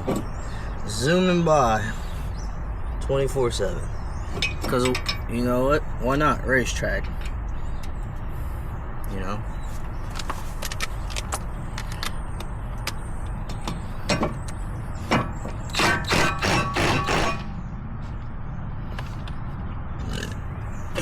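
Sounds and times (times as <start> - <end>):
highway traffic rumble: 0.0 - 21.0.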